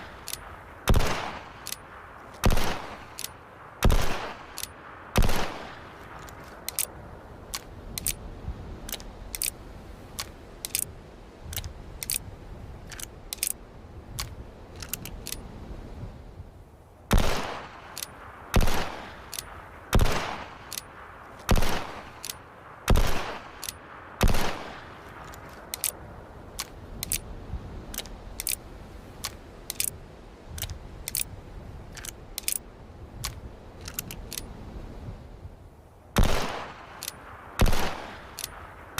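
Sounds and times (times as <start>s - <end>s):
revolver gunshots echoing: 0.9s - 1.7s, 2.4s - 3.2s, 3.8s - 4.6s, 5.2s - 5.9s, 17.1s - 20.8s, 21.5s - 22.3s, 22.9s - 25.0s, 36.2s - 37.0s, 37.6s - 38.4s.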